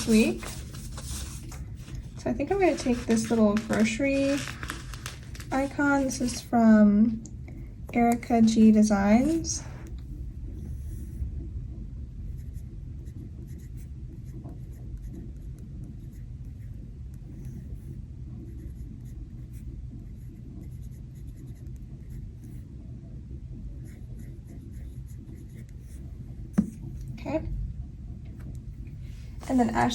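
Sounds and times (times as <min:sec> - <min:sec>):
paper rustling: 0:00.0 - 0:06.6, 0:08.4 - 0:09.8
sticker being handled: 0:00.0 - 0:06.6.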